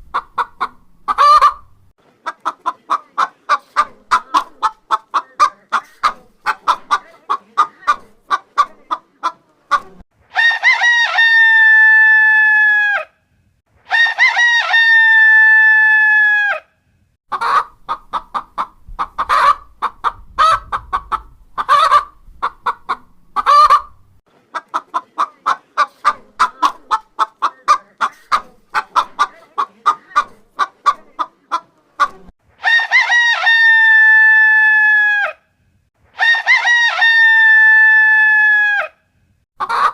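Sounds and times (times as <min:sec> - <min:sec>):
chicken clucking: 0:00.0 - 0:11.4, 0:17.3 - 0:33.8, 0:36.2 - 0:37.5, 0:39.6 - 0:39.9
rooster crowing: 0:10.3 - 0:13.1, 0:13.9 - 0:16.7, 0:32.6 - 0:35.4, 0:36.2 - 0:39.0.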